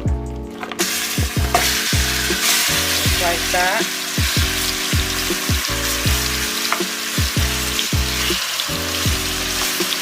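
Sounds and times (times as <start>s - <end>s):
music with a beat: 0.0s - 10.0s
chicken sizzling in a pot: 0.7s - 10.0s.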